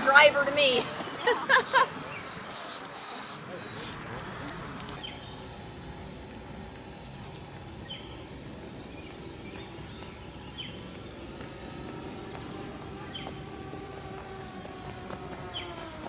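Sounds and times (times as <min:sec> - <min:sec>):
birds twittering: 0:00.0 - 0:16.0
bird falling call: 0:10.6 - 0:16.0.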